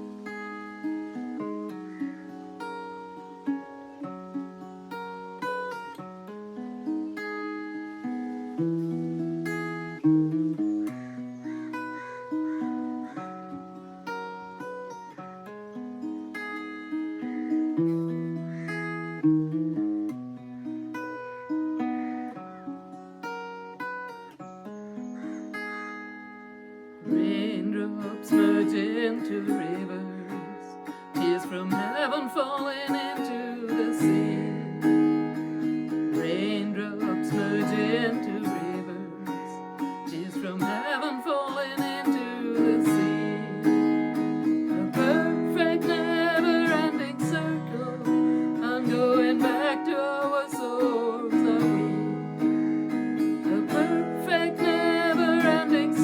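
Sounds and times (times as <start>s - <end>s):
strummed acoustic guitar: 0.0s - 56.0s
person singing long notes: 27.0s - 56.0s.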